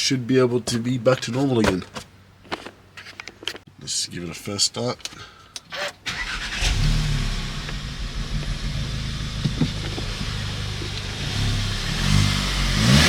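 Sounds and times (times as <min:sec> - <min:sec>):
car engine idling and revving: 0:06.1 - 0:13.0.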